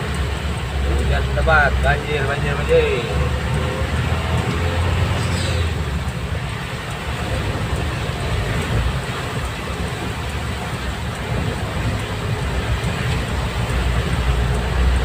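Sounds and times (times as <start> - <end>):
vehicle rumble and hiss: 0.0 - 15.0.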